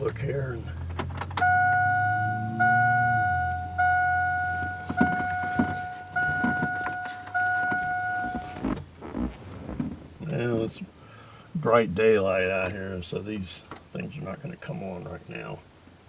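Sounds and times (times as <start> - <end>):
dashboard warning chime: 1.4 - 8.8.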